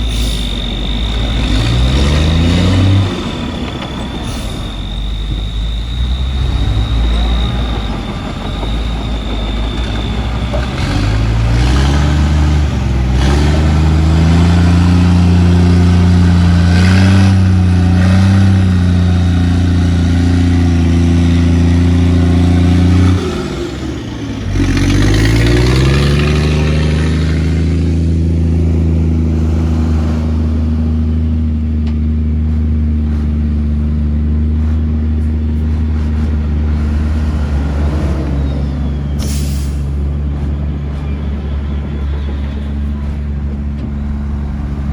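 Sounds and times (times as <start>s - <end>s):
thin high whine: 0.0s - 31.0s
earthmoving machine diesel engine revving: 0.0s - 44.9s.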